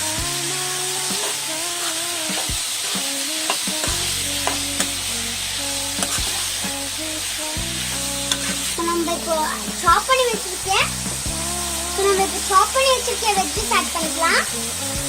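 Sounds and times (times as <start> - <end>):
chicken sizzling in hot oil: 0.0 - 15.0
spoon scraping against pan: 1.1 - 5.0, 6.0 - 6.8, 7.9 - 8.9.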